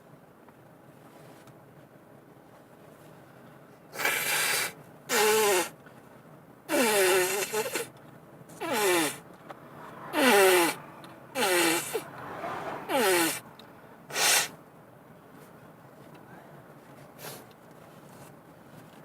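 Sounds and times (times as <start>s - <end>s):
person sneezing: 4.0s - 5.7s, 8.6s - 9.2s, 10.1s - 13.4s, 14.1s - 14.5s.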